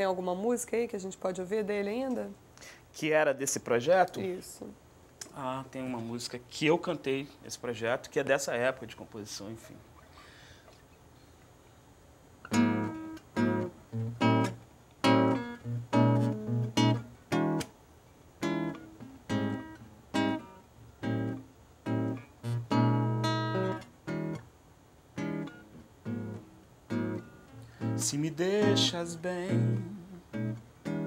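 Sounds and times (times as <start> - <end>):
acoustic guitar strumming chords: 12.5 - 17.7, 18.4 - 24.5, 25.2 - 31.0.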